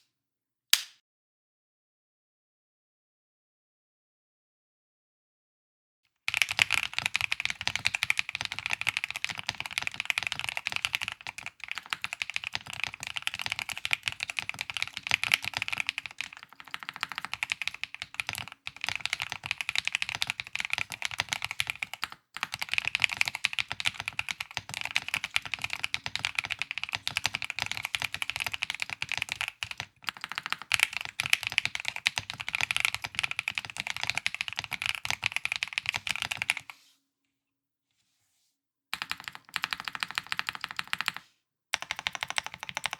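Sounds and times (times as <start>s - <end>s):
mechanical keyboard typing: 6.3s - 36.6s, 39.0s - 41.2s, 41.8s - 42.9s.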